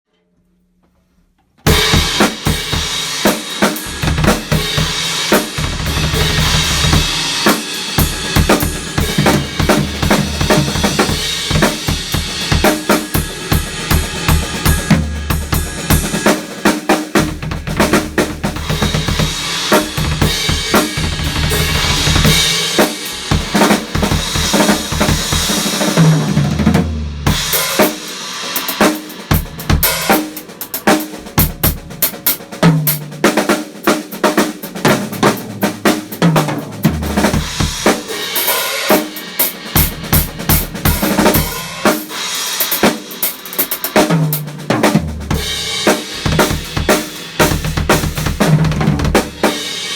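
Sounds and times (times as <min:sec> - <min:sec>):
drum kit solo: 0:01.6 - 0:49.9
cymbals washing: 0:18.5 - 0:26.0.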